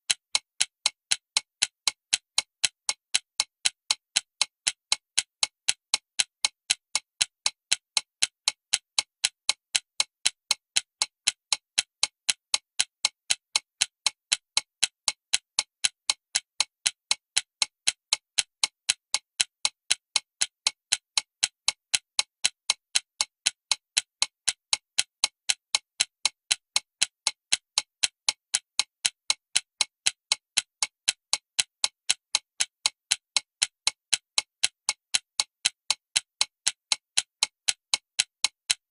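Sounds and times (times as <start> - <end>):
alarm clock ticking: 0.1 - 38.8.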